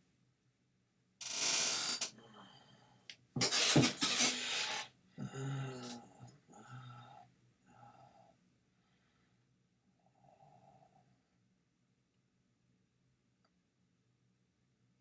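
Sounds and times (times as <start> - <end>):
throat grunts: 5.2 - 6.8.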